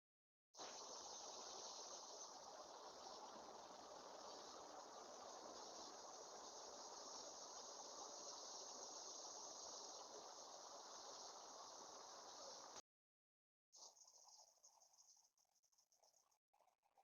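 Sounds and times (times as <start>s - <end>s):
even hiss: 0.6s - 12.8s.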